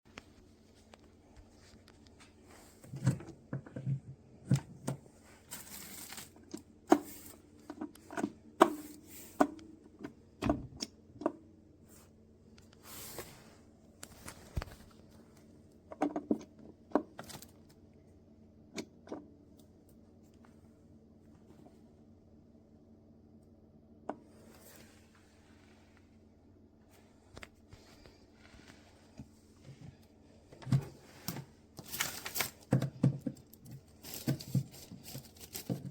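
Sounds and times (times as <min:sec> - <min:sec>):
clicks and knocks of handling: 0:27.3 - 0:35.9.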